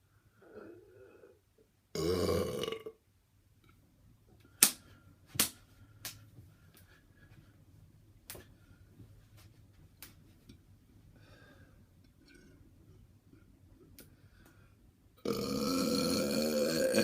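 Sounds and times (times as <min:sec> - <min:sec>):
man belching: 0:01.9 - 0:03.0, 0:15.2 - 0:17.0.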